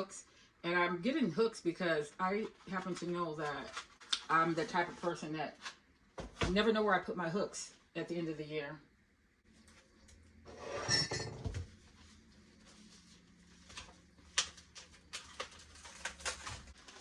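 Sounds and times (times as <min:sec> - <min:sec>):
rustling scrape on counter: 0:10.5 - 0:11.6
kitchen items clinking and knocking: 0:10.5 - 0:11.7.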